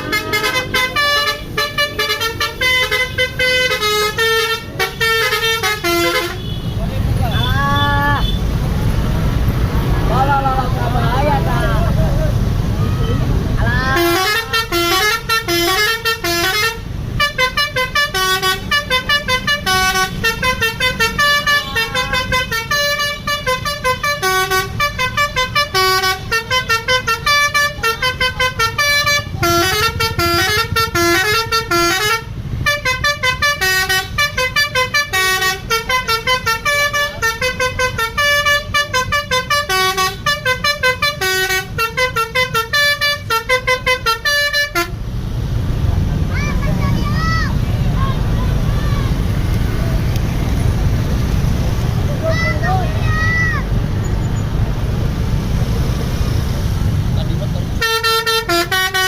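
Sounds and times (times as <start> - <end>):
musical bus horn tune: 0.0 - 8.5, 13.9 - 45.0, 57.8 - 59.0.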